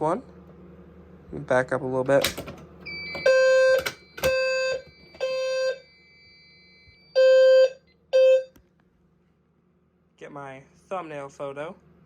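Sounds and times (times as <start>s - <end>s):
steady high beep: 2.9s - 8.5s
fire alarm horn blasts: 2.9s - 8.6s.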